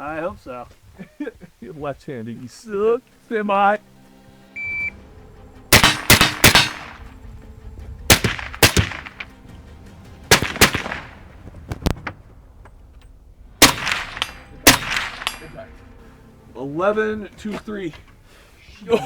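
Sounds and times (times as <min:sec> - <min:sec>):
shot timer beep: 0:04.6 - 0:05.0
gunshots with echoes: 0:05.7 - 0:07.1, 0:08.1 - 0:09.3, 0:10.3 - 0:11.2, 0:13.6 - 0:15.5.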